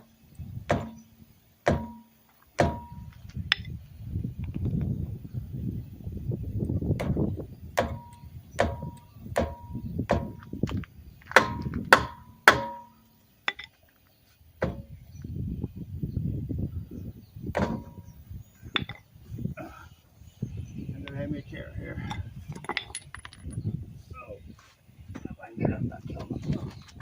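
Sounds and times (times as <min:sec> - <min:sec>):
hammer blows on metal: 0:00.0 - 0:03.7, 0:07.0 - 0:10.7, 0:11.3 - 0:13.2, 0:14.6 - 0:15.0, 0:17.5 - 0:18.2.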